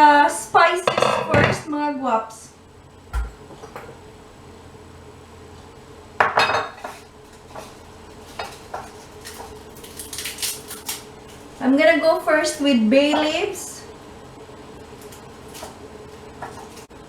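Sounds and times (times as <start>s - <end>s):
faint steady hum: 0.0s - 17.0s
kitchenware clinking and clattering: 0.8s - 1.7s.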